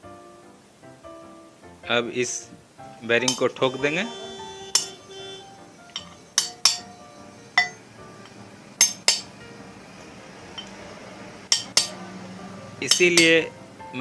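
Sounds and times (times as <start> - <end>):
hammer striking metal bearing: 4.6 - 7.0, 7.6 - 7.8, 8.8 - 9.3, 10.6 - 10.8, 11.5 - 12.0, 12.9 - 13.5.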